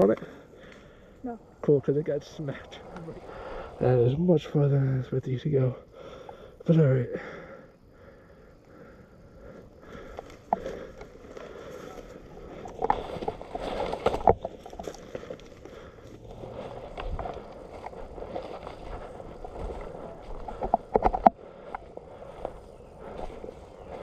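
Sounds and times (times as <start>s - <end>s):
rustling and scuffing: 12.8s - 21.2s.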